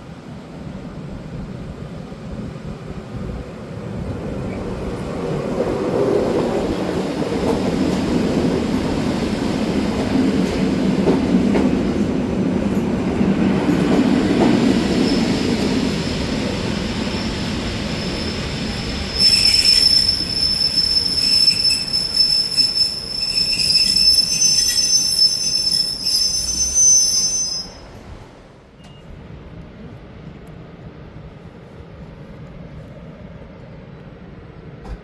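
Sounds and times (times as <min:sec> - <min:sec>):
train rumble: 0:00.0 - 0:35.0
train wheel squeal: 0:13.6 - 0:28.1, 0:28.8 - 0:29.2.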